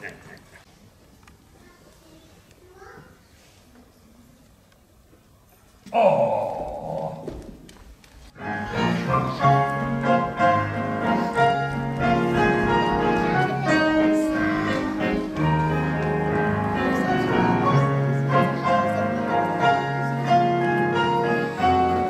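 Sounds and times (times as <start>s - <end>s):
piano-like keyboard notes: 8.3s - 22.0s.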